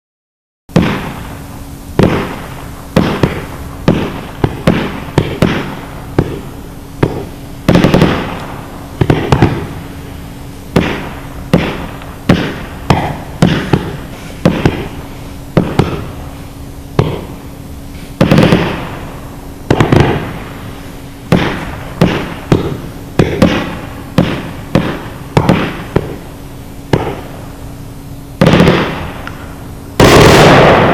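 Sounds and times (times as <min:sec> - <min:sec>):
firework bangs: 0:00.7 - 0:30.9.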